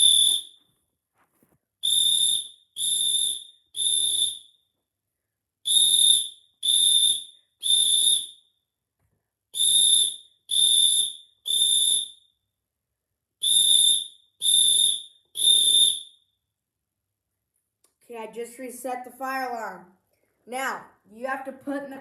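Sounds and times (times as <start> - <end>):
fire alarm beeping: 0.0 - 0.7, 1.8 - 4.6, 5.7 - 8.6, 9.6 - 12.4, 13.4 - 16.3.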